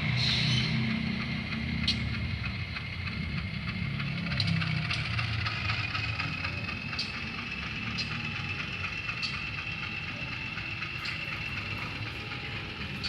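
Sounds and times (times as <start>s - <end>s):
model locomotive diesel drone: 0.0s - 13.0s
steady high whine: 8.6s - 13.0s.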